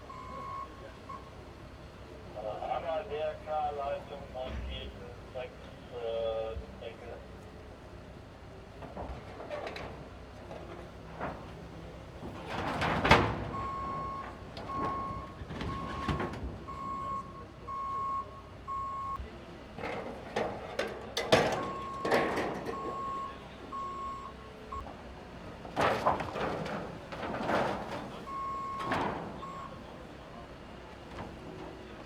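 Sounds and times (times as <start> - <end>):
reversing alarm beeping: 0.1 - 1.3, 13.5 - 19.2, 21.6 - 24.8, 28.2 - 29.9
debris clanking and clattering: 8.8 - 17.0, 19.7 - 23.3, 25.6 - 29.8.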